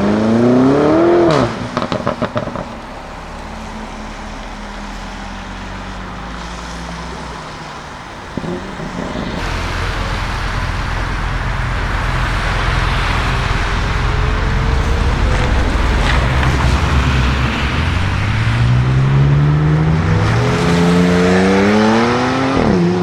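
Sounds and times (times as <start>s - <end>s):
car engine droning: 0.0s - 23.0s
rushing noise: 6.9s - 23.0s.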